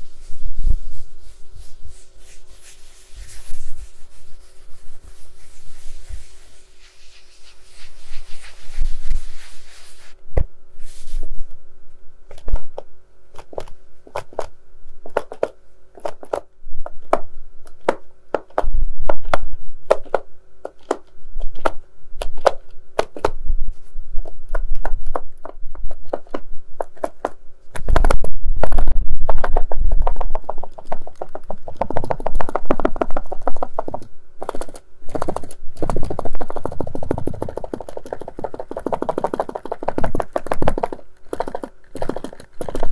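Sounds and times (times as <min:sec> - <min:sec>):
scratching: 0:20.0 - 0:42.9.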